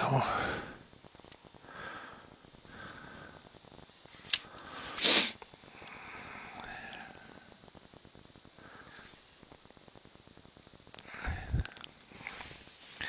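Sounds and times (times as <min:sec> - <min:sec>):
loud sniff through nose: 0:04.3 - 0:05.4.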